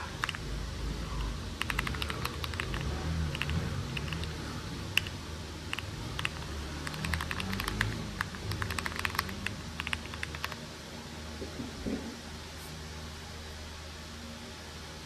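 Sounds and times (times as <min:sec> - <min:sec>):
mechanical keyboard typing: 0:00.1 - 0:00.5, 0:01.2 - 0:10.6.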